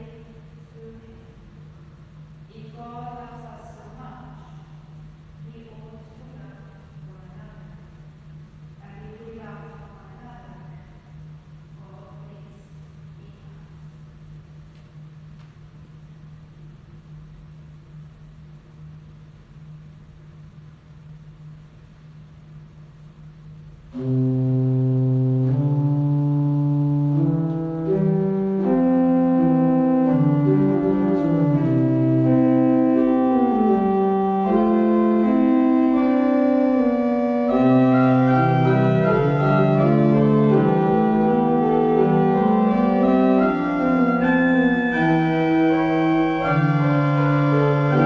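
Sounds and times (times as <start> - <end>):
faint hum: 0.0 - 48.0
church organ playing chords: 23.9 - 48.0.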